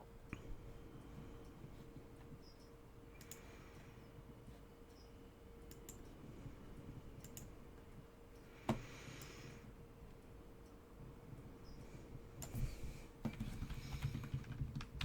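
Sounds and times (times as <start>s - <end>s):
low steady hum: 0.0s - 15.0s
computer mouse and keyboard clicks: 3.2s - 3.5s, 12.4s - 15.0s.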